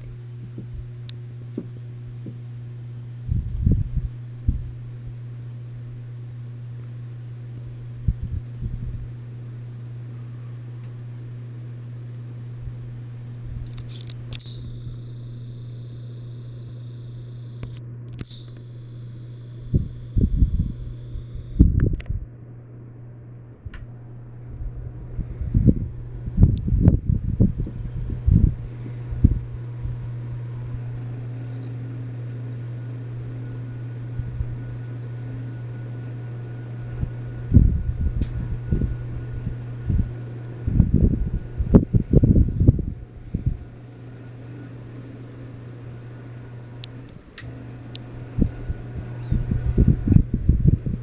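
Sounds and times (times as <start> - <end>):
ceiling fan motor humming: 0.0 - 51.0
short clicks: 13.6 - 22.1.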